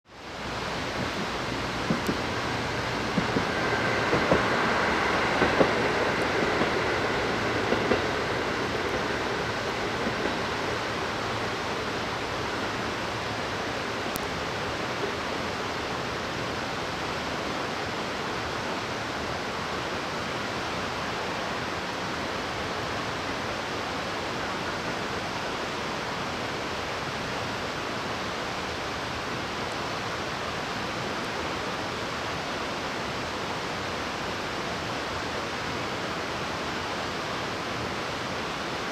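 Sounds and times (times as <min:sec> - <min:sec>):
steady rushing noise: 0:00.1 - 0:38.9
train passing: 0:00.2 - 0:38.9
train clicks: 0:00.8 - 0:13.0.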